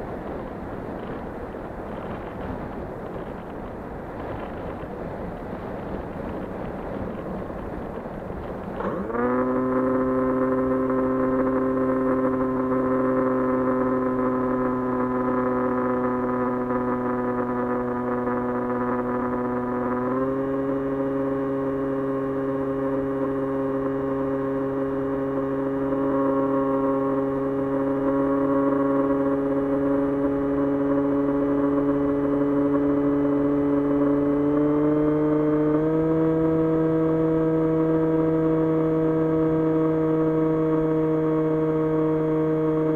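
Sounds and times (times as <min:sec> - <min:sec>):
electric motor and propeller whine: 0:08.5 - 0:42.9.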